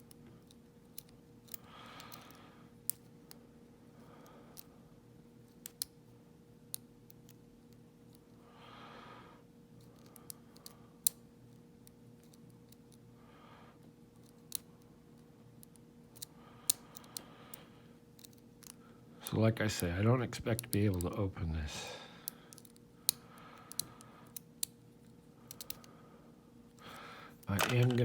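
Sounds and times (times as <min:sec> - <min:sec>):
lock picks clicking in a padlock: 0:25.5 - 0:25.9.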